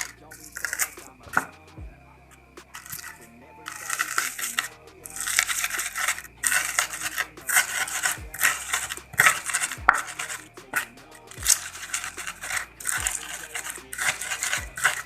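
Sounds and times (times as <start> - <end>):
faint background music: 0.0 - 15.0.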